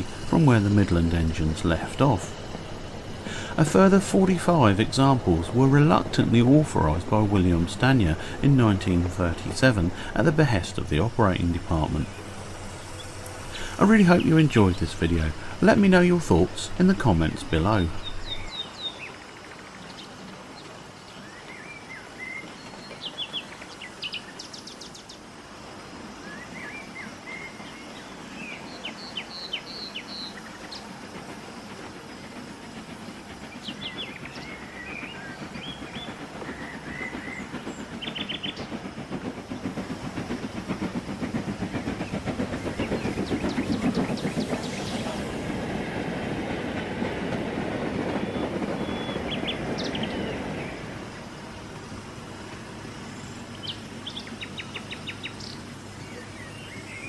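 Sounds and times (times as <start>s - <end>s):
birds chirping: 0.0s - 25.3s, 26.2s - 57.0s
train rumbling on rails: 0.0s - 57.0s.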